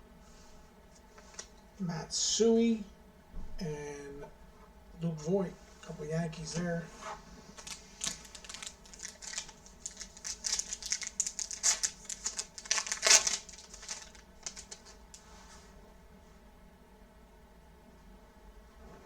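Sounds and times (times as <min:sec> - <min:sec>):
foil wrapper crinkling and tearing: 0:07.6 - 0:15.1.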